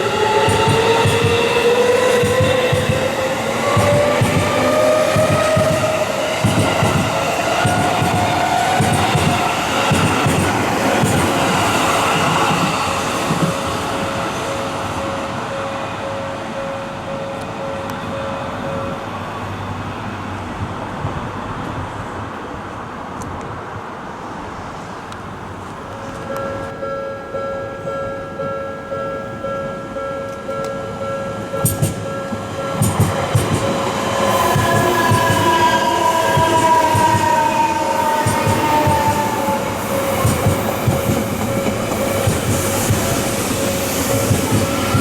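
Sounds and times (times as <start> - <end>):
train running over rails: 0.0 - 45.0
level crossing warning bell: 13.7 - 19.2, 26.2 - 45.0.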